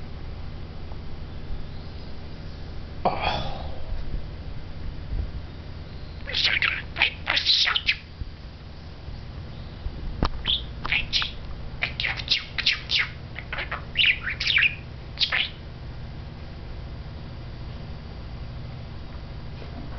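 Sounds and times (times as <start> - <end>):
low background hum: 0.0 - 19.9
budgerigar chattering: 6.2 - 8.1, 10.4 - 15.6.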